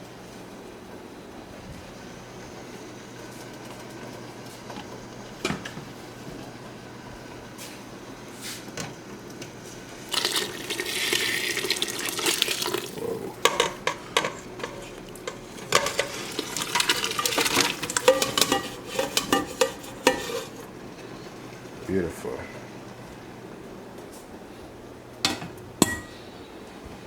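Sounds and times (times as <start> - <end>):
water pouring: 10.1 - 13.4, 14.5 - 18.0
metal pots and utensils clinking: 10.1 - 20.7, 25.2 - 26.2.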